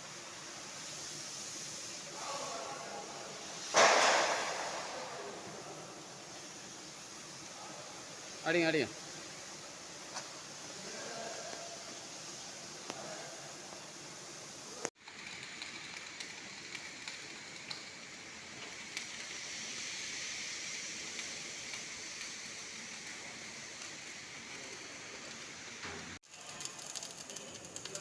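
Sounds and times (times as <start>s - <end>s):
welding arc crackling and hissing: 0.0s - 28.0s
sharp welding pops: 3.5s - 7.6s, 14.9s - 28.0s.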